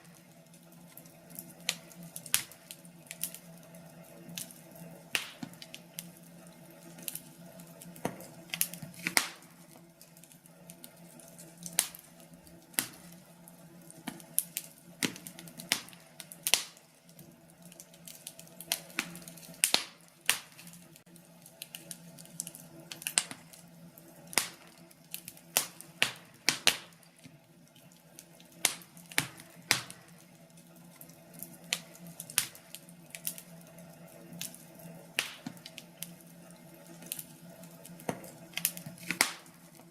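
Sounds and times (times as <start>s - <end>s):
wood fire crackling: 0.0s - 39.9s
sharp fire pops: 1.3s - 3.4s, 4.4s - 6.2s, 7.8s - 9.6s, 10.8s - 13.2s, 13.9s - 16.9s, 17.8s - 20.8s, 21.6s - 23.6s, 24.2s - 27.2s, 28.6s - 30.2s, 31.4s - 33.4s, 34.4s - 36.2s, 37.9s - 39.7s.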